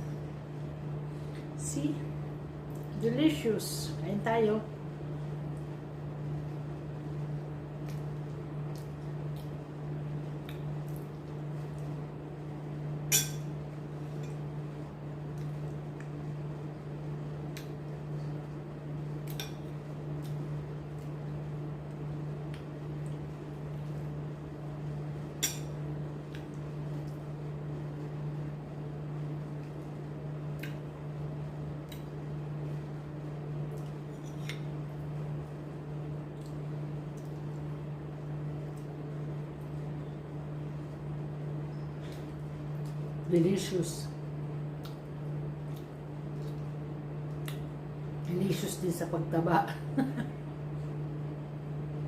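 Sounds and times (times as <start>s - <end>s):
steady low hum: 0.0s - 52.0s
cutlery clinking on plate: 13.1s - 13.4s.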